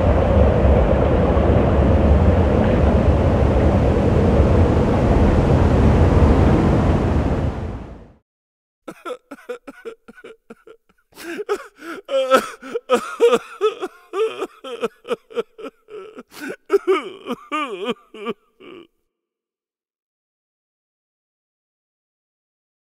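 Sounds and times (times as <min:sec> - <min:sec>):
wind noise: 0:00.0 - 0:08.1.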